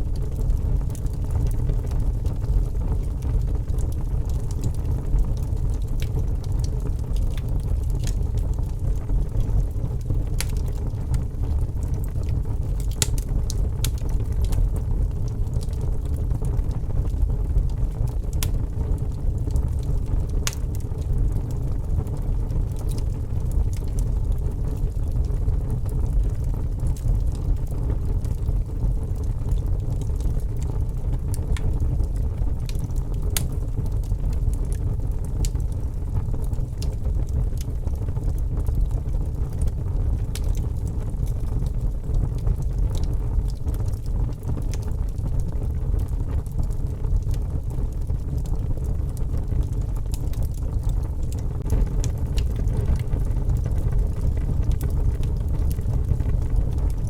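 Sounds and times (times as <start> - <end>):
wood fire crackling: 0.0 - 57.0
sharp pops of fire: 12.8 - 14.6, 49.5 - 56.9
low rumble: 50.7 - 56.9.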